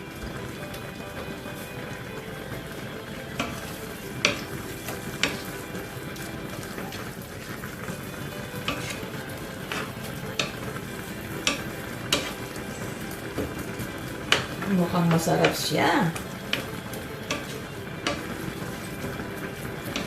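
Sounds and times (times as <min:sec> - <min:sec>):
sauce sizzling in a pan: 0:00.0 - 0:20.0
utensil scraping a pan: 0:02.5 - 0:20.0.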